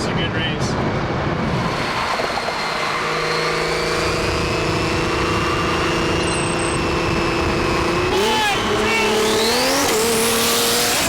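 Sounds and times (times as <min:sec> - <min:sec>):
car engines running: 0:00.0 - 0:11.0.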